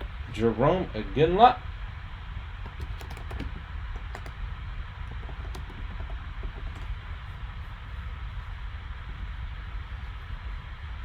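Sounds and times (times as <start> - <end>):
background hiss and hum: 0.0 - 11.0
keyboard keystrokes: 2.6 - 4.4, 5.0 - 6.9.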